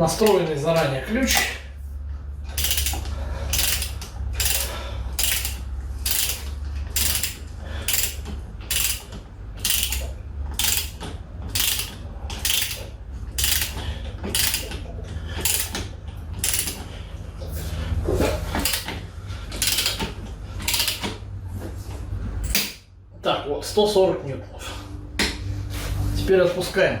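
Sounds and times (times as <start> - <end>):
steady low hum: 0.0 - 27.0
torque wrench ratchet clicking: 2.6 - 14.8, 15.4 - 16.9, 18.6 - 19.0, 19.6 - 21.1.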